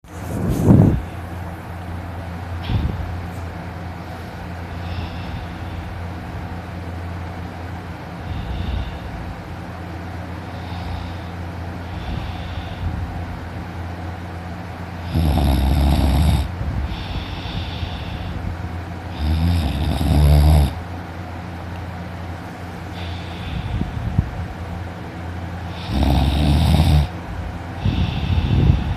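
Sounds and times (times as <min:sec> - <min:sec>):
soft breaths: 0:00.2 - 0:15.1, 0:16.4 - 0:19.2, 0:21.1 - 0:28.9
man snoring loudly: 0:15.0 - 0:17.8, 0:19.1 - 0:20.8, 0:25.7 - 0:27.1.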